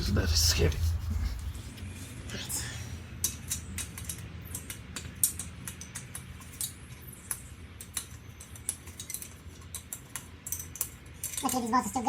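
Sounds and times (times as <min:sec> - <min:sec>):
low steady hum: 0:00.0 - 0:05.2
metal parts clicking and tapping: 0:03.2 - 0:12.0.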